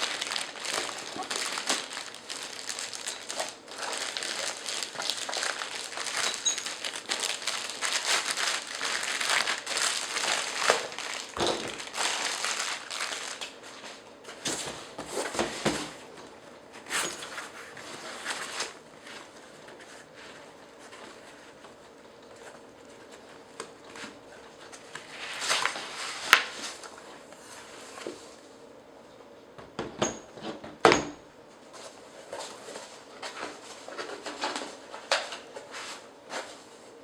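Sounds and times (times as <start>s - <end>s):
packaging crinkling and rustling: 0.0s - 16.0s, 17.0s - 20.2s, 20.8s - 27.2s.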